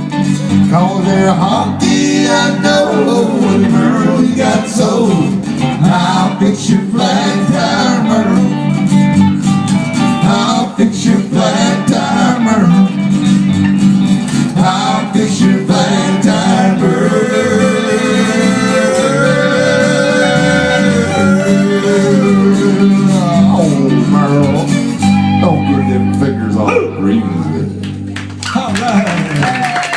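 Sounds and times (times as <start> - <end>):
acoustic guitar: 0.0 - 29.9
people singing: 0.7 - 8.8, 10.1 - 13.0, 14.4 - 24.7.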